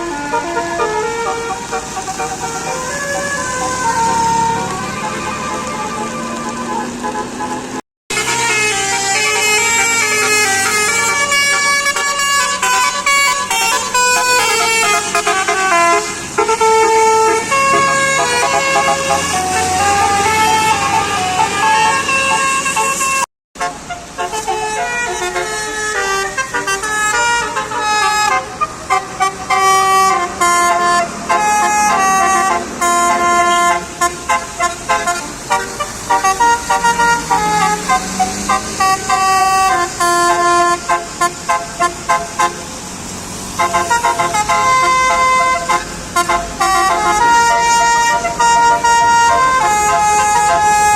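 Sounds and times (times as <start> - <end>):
bus air horns playing tunes: 0.0 - 50.9.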